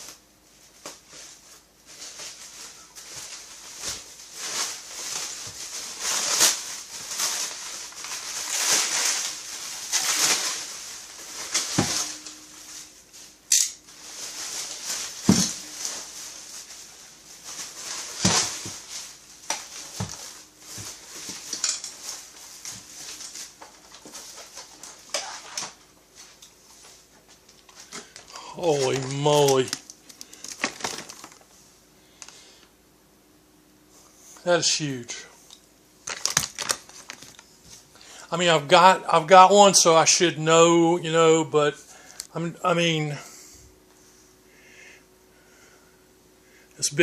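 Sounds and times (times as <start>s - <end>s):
packaging rustling: 0.0s - 31.6s, 36.0s - 37.9s.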